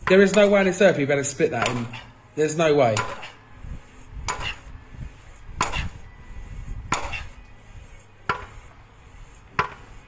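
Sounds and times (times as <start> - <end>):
sledgehammer striking boulder: 5.6 - 6.0, 6.9 - 7.3.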